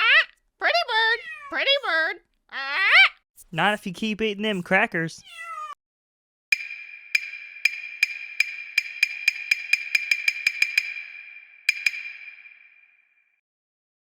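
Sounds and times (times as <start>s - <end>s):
struck percussion with high ring: 6.5s - 13.4s.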